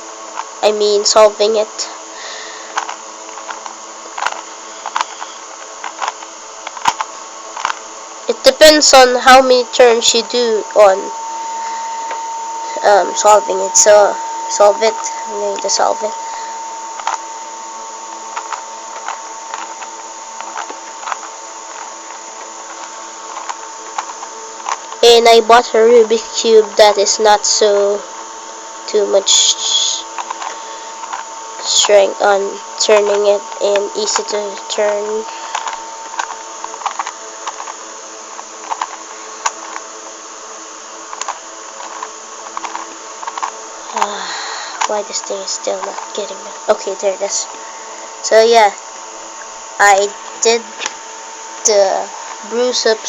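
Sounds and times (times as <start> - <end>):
steady background hiss: 0.0 - 53.0
steady background hum: 0.0 - 53.0
puzzle cube plastic clicks: 2.7 - 7.8, 17.0 - 17.2, 18.3 - 24.9, 30.1 - 32.0, 32.9 - 39.9, 41.1 - 44.1, 44.7 - 47.5.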